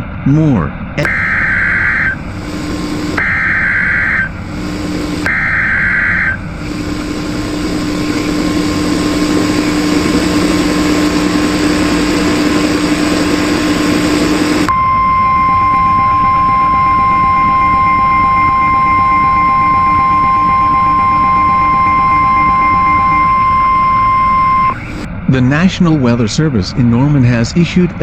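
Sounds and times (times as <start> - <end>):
low steady hum: 0.0 - 28.0
shrill digital warbling bursts: 1.0 - 8.4
hissing static: 1.0 - 14.7
single-pitched alarm tone: 1.0 - 25.1.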